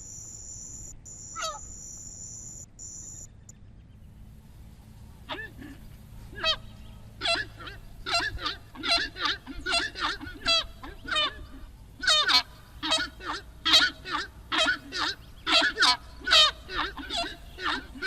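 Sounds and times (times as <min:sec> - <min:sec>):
screamer bird honking calls: 0:01.4 - 0:01.7, 0:05.3 - 0:18.0.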